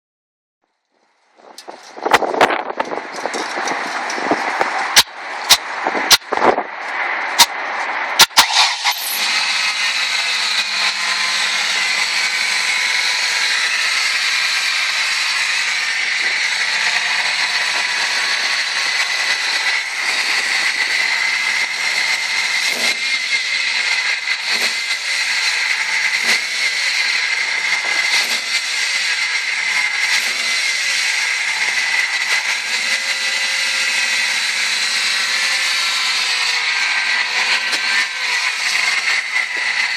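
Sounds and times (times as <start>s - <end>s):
car engine running: 1.2s - 32.8s
high-pitched whine: 2.4s - 29.5s.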